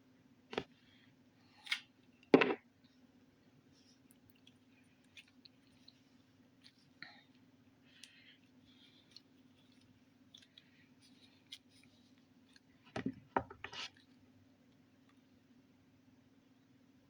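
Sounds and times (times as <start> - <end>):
knocks and handling noises: 2.3 - 2.6, 12.9 - 13.9.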